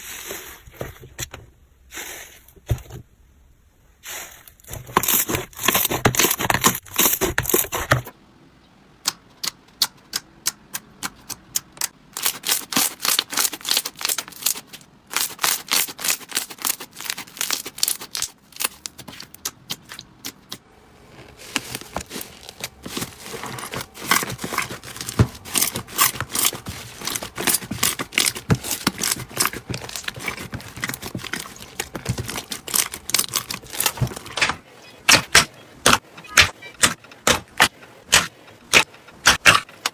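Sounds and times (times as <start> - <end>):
slime crackling and popping: 12.2 - 20.6, 24.0 - 34.0.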